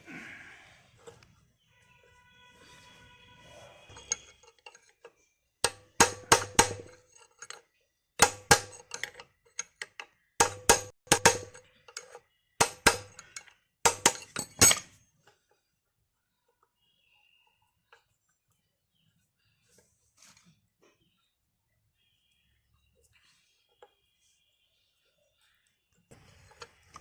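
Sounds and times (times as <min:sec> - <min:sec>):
metal parts clinking and tapping: 0:03.9 - 0:15.4.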